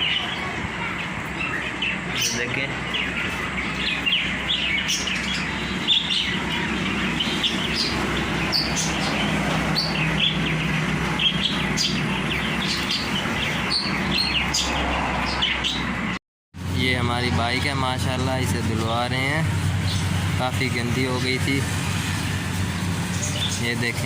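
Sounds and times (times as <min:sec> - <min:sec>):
small birds chirping: 0:00.0 - 0:16.2, 0:16.8 - 0:24.0.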